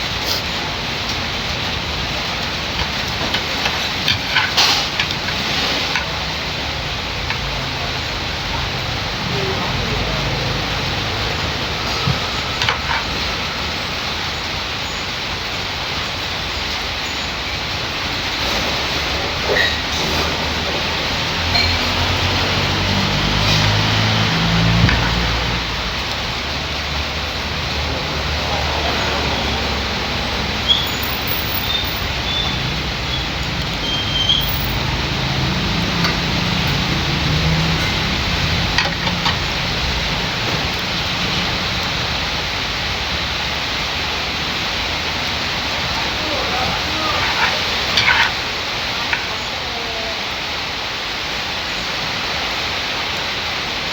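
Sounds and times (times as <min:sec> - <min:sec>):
heavy rain hissing: 0:00.0 - 0:53.9
low vehicle engine hum: 0:19.0 - 0:49.8.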